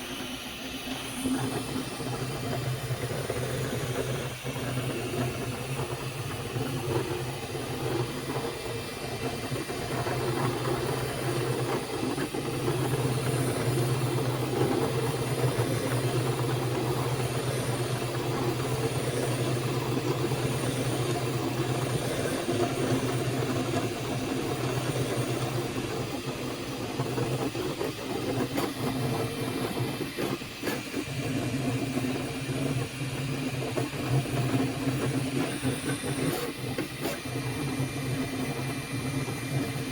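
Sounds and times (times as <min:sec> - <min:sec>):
printer fans and motors humming: 0:00.0 - 0:39.9.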